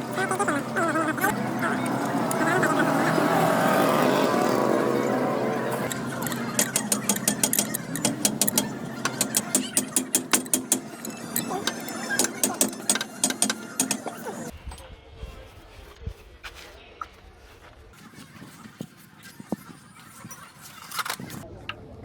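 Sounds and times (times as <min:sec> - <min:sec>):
hand tools clicking on metal: 0:00.0 - 0:03.2, 0:05.7 - 0:14.5.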